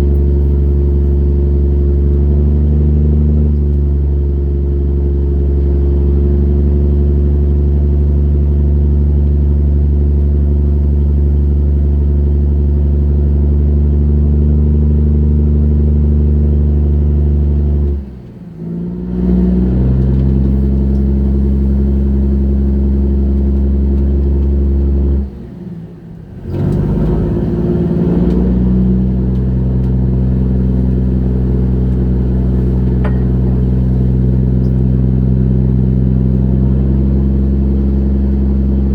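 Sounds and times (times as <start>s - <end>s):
boat engine droning: 29.2s - 38.9s.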